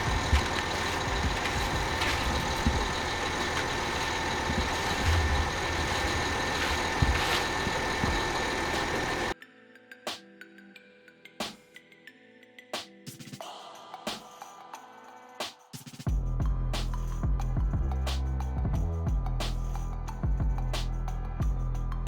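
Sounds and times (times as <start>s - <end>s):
low thumps: 0.0s - 9.2s
heavy truck engine running: 0.0s - 9.4s.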